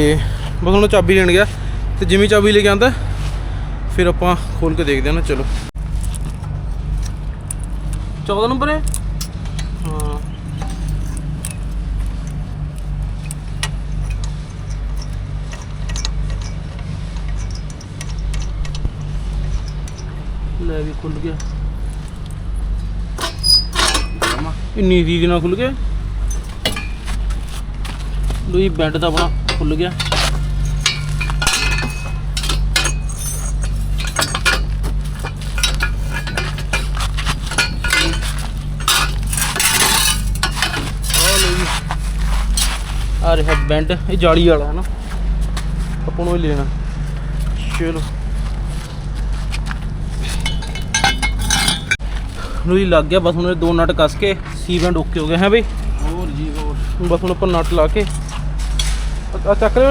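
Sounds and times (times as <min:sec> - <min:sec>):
steady low hum: 0:00.0 - 0:59.9
metal pipes and spanners clinking: 0:05.8 - 0:59.0
spanner clicking on metal: 0:23.2 - 0:24.4, 0:28.8 - 0:41.8.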